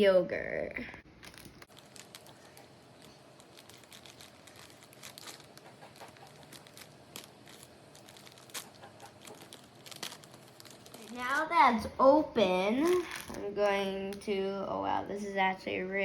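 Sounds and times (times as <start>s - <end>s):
plastic bag crinkling: 1.1s - 11.6s, 12.8s - 13.4s.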